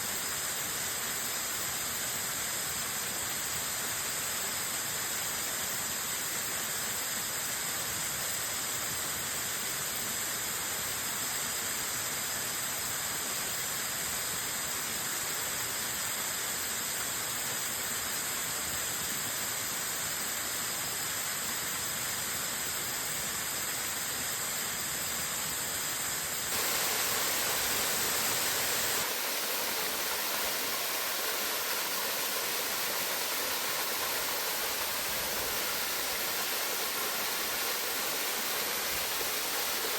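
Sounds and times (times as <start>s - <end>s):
waterfall rushing: 26.5s - 39.9s.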